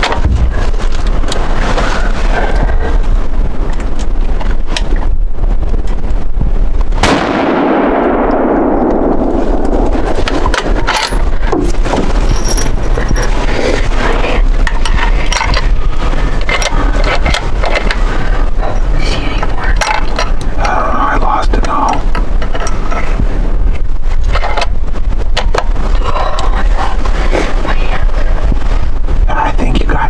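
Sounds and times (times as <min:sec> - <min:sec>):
wind rumble on microphone: 0:00.0 - 0:30.0
rifle shot: 0:07.0 - 0:10.9.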